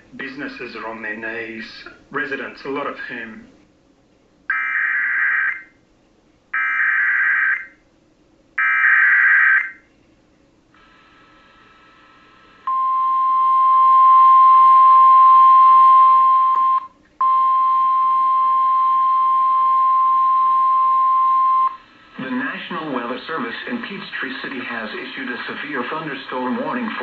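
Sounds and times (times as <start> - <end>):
steady warning alarm tone: 4.5 - 5.8, 6.6 - 7.8, 8.6 - 9.8.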